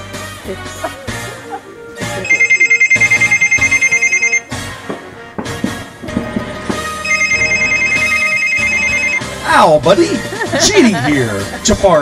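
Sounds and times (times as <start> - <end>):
background music: 0.0 - 12.0
telephone ringing: 2.2 - 4.6, 7.0 - 9.3.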